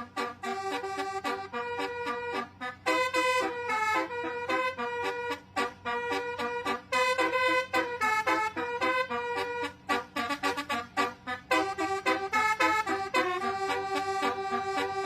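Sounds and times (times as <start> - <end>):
multi-tone bus horn melody: 0.0 - 15.0.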